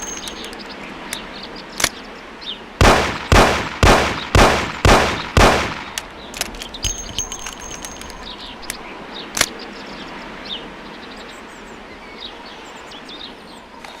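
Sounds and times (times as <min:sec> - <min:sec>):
small birds chirping: 0:00.0 - 0:14.0
sharp clicks: 0:02.8 - 0:08.8.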